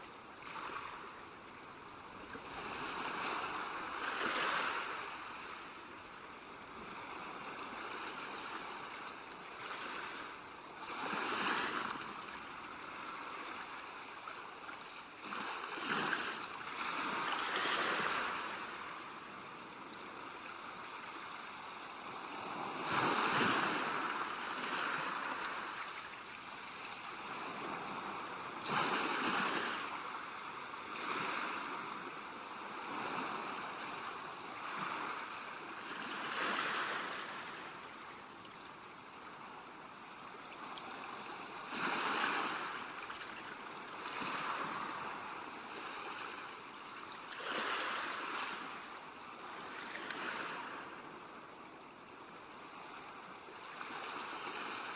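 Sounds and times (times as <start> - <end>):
ocean waves crashing on shore: 2.4 - 5.9, 15.2 - 38.0, 40.7 - 46.6, 47.3 - 51.2.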